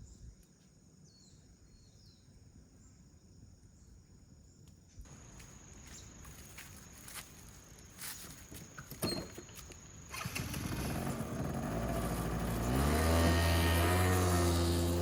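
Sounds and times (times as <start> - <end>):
moped engine starting and idling: 10.1 - 15.0.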